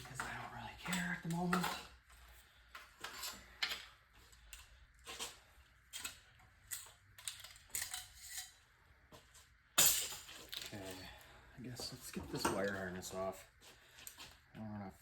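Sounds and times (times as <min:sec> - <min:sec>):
metallic clinks and scrapes: 0:00.0 - 0:08.7.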